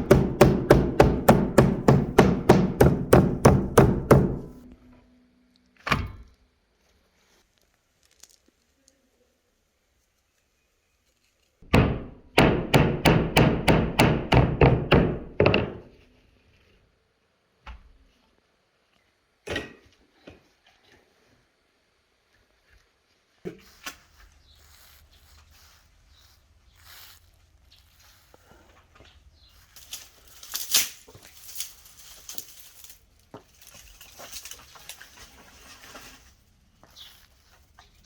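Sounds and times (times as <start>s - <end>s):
chopping blows on wood: 0.0s - 4.6s.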